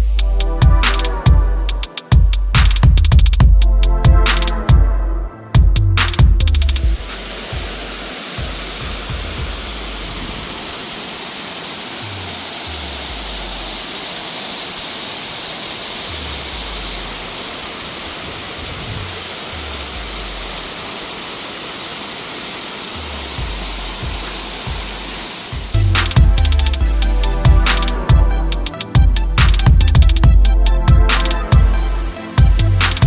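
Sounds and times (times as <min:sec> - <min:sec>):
waterfall rushing: 0:06.9 - 0:33.0.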